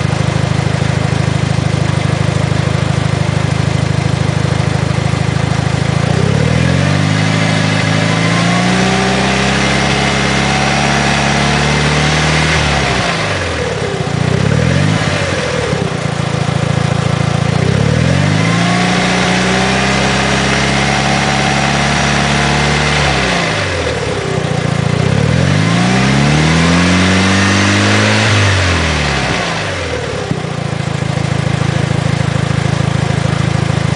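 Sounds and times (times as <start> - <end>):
engine rattle: 0.0 - 33.9
car engine revving: 5.9 - 32.6.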